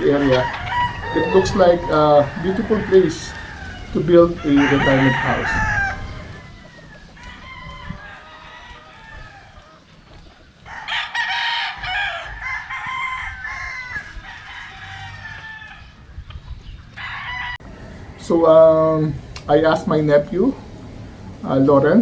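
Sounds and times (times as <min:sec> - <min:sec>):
rooster crowing: 0:00.0 - 0:09.8, 0:10.6 - 0:16.2, 0:16.9 - 0:19.0.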